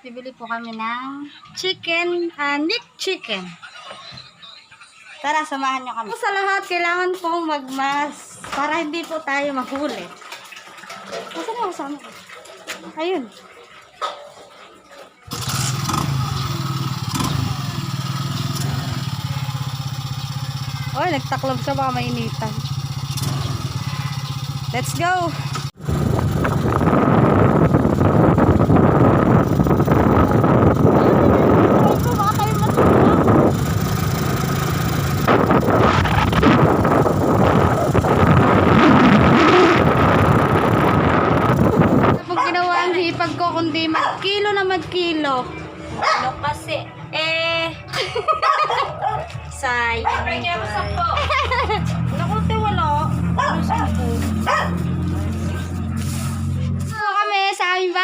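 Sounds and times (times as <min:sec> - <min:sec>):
vehicle running: 0:15.3 - 0:47.9, 0:48.9 - 0:57.0
motorcycle engine idling: 0:15.4 - 0:38.4
wind buffeting microphone: 0:25.8 - 0:42.5.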